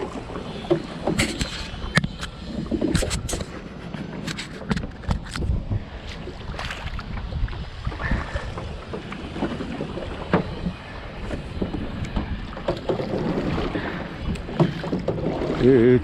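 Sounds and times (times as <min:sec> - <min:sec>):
wind buffeting microphone: 0:01.1 - 0:16.0.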